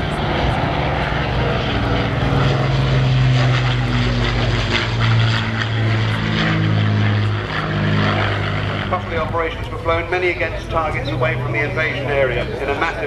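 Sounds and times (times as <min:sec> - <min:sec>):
propeller plane drone: 0:00.0 - 0:13.0.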